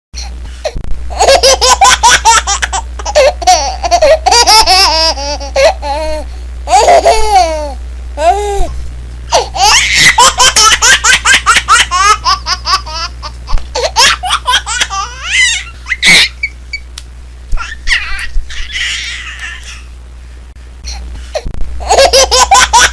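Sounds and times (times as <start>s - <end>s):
baby laughing: 1.1s - 8.7s, 9.3s - 16.6s, 17.6s - 19.9s, 21.8s - 22.9s.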